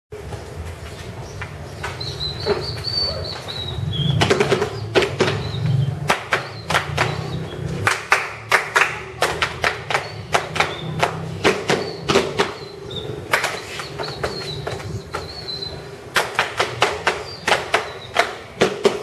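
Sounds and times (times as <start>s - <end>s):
hands clapping and slapping body: 6.0s - 7.2s, 7.8s - 12.6s, 13.3s - 14.4s, 16.2s - 19.0s.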